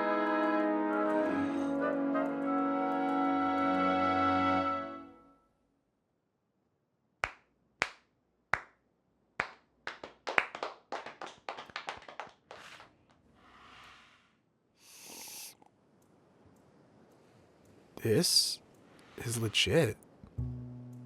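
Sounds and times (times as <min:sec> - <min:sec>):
hand claps: 0:07.2 - 0:08.8, 0:09.4 - 0:12.9
short bursts of hiss: 0:13.5 - 0:15.6.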